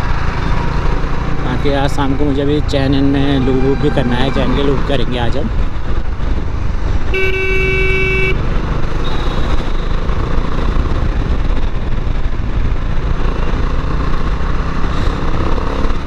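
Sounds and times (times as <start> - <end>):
motorcycle engine running: 0.0 - 3.5, 4.7 - 16.0
road noise: 0.0 - 16.0
vehicle horn: 7.1 - 9.9.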